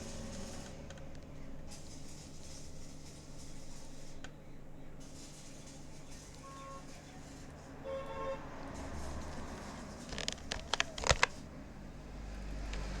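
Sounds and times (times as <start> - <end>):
faint horn-like tone: 6.4 - 7.2, 7.8 - 9.0.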